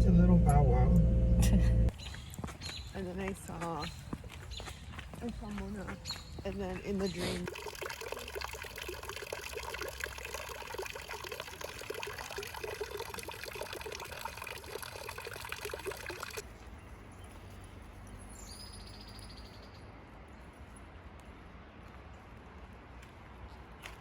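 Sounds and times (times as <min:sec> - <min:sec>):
water pouring: 0:07.4 - 0:16.4.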